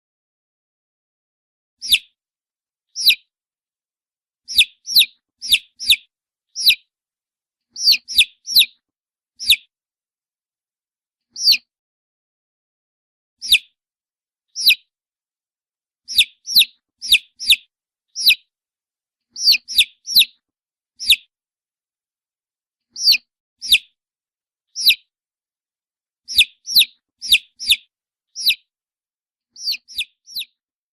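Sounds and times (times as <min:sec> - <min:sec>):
baby chick peeping: 0:01.8 - 0:02.2, 0:02.9 - 0:03.3, 0:04.5 - 0:06.9, 0:07.7 - 0:08.8, 0:09.4 - 0:09.7, 0:11.3 - 0:11.7, 0:13.4 - 0:13.8, 0:14.6 - 0:14.9, 0:16.1 - 0:18.5, 0:19.3 - 0:20.4, 0:21.0 - 0:21.3, 0:22.9 - 0:24.0, 0:24.8 - 0:25.1, 0:26.3 - 0:28.7, 0:29.5 - 0:30.6.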